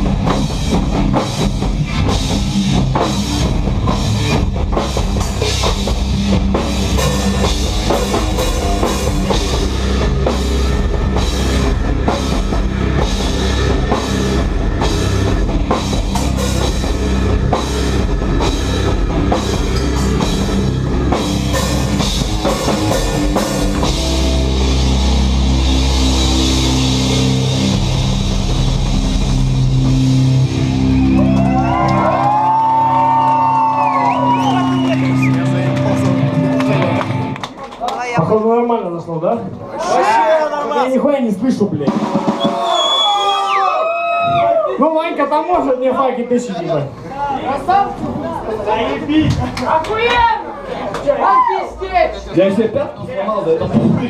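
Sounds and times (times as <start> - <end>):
rock band playing live: 0.0 - 38.2, 41.7 - 43.6.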